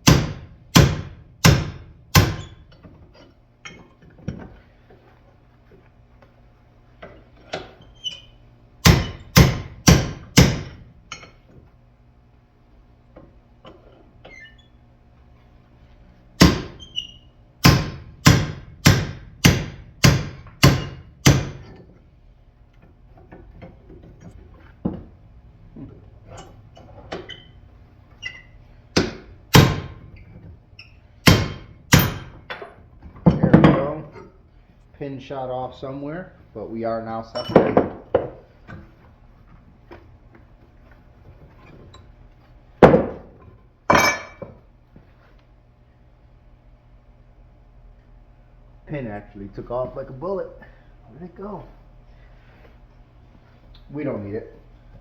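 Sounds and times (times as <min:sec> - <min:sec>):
hammer striking metal: 0:00.0 - 0:02.5, 0:08.8 - 0:11.3, 0:17.6 - 0:21.7, 0:29.0 - 0:30.0, 0:31.2 - 0:32.4.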